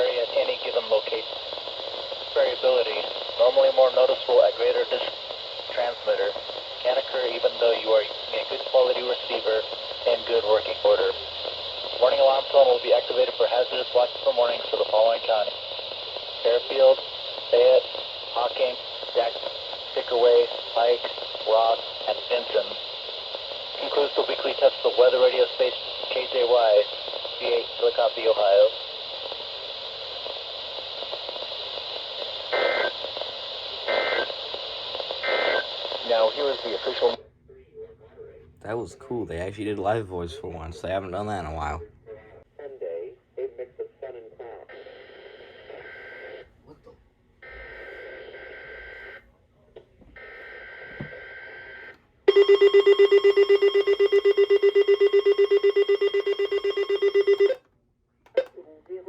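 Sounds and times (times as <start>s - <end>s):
radio hiss: 0.0s - 37.2s, 37.8s - 46.4s
rapidly pulsing alarm tone: 50.6s - 57.6s.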